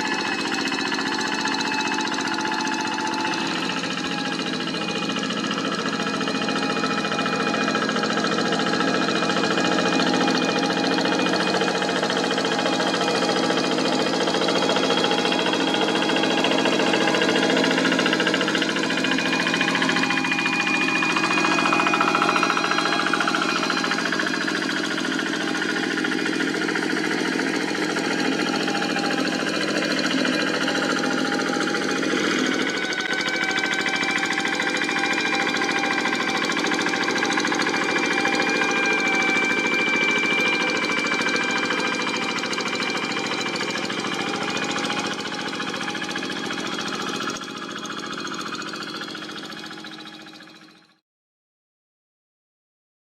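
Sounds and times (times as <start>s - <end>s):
tractor diesel engine knocking: 0.0s - 50.9s.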